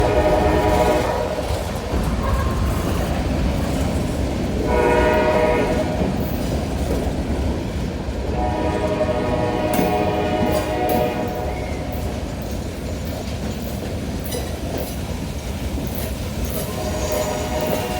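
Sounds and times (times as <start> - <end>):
train horn blasts: 0.0 - 2.4, 4.6 - 6.2, 8.3 - 12.1, 16.6 - 17.9
freight train rumbling on rails: 0.0 - 17.9.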